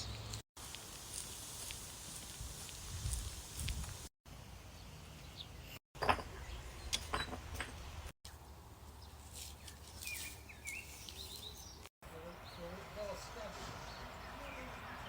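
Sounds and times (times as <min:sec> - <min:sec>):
wind rumble on microphone: 0:02.2 - 0:04.1
bird chirping: 0:07.8 - 0:15.0.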